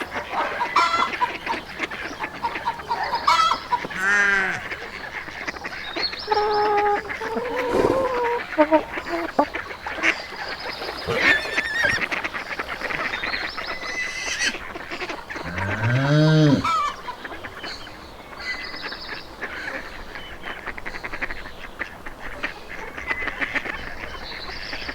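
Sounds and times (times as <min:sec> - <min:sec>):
poultry clucking and honking: 0:00.0 - 0:17.6
low drawn-out bird call: 0:05.8 - 0:09.8, 0:10.6 - 0:14.0.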